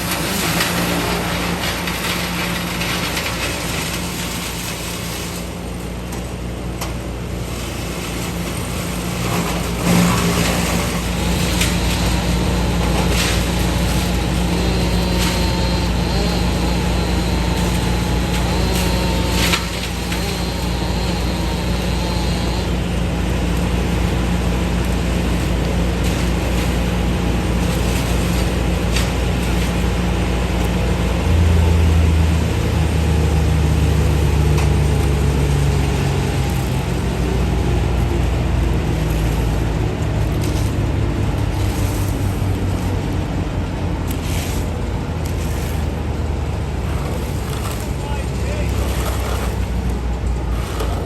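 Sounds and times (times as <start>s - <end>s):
large engine running: 0.0s - 51.0s.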